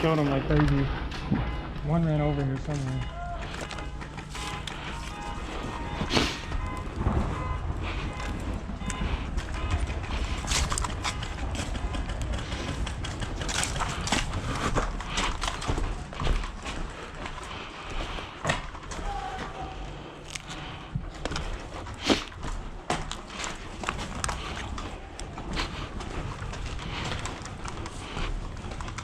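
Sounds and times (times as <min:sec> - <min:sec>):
footsteps and gear clatter: 0:00.0 - 0:29.0
wind rumble on microphone: 0:05.1 - 0:16.5.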